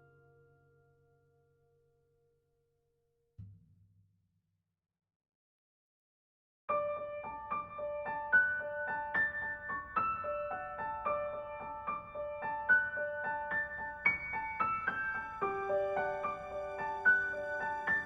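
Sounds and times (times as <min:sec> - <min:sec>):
gentle piano melody: 0:06.7 - 0:18.0.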